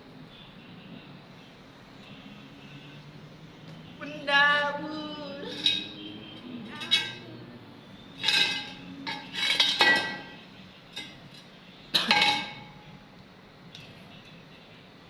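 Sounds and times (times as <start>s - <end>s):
metal objects clinking: 5.4s - 6.0s, 6.7s - 7.3s, 8.2s - 10.4s, 12.0s - 12.8s.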